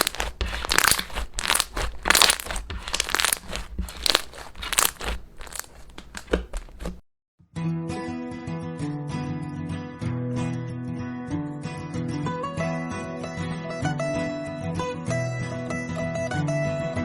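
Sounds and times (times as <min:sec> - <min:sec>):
slime squishing by hand: 0:00.0 - 0:07.0.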